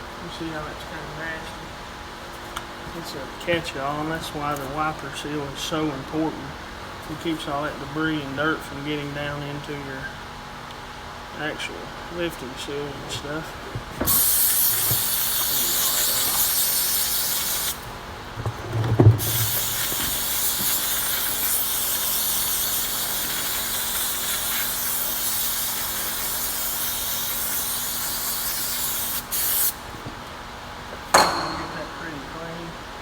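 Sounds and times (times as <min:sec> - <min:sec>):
aerosol spray hissing: 0:14.1 - 0:17.8, 0:19.2 - 0:29.8.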